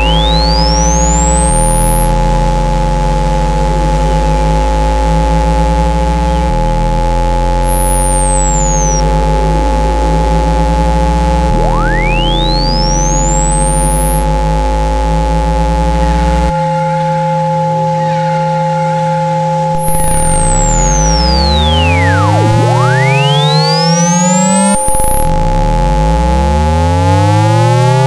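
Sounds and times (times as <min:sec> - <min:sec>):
high whistle sweeping: 0:00.0 - 0:03.9, 0:05.9 - 0:09.1, 0:11.5 - 0:16.6, 0:18.0 - 0:27.4
synthesized tones: 0:00.0 - 0:17.0, 0:17.8 - 0:28.0
pulsing buzz: 0:00.0 - 0:28.0.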